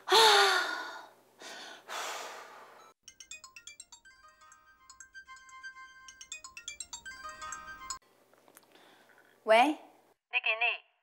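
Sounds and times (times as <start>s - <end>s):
mobile phone ringtone: 3.1s - 8.0s.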